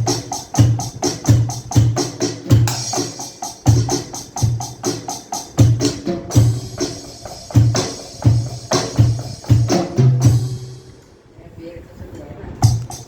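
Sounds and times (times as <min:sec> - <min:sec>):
electronic drum kit groove: 0:00.0 - 0:11.0, 0:12.6 - 0:13.0.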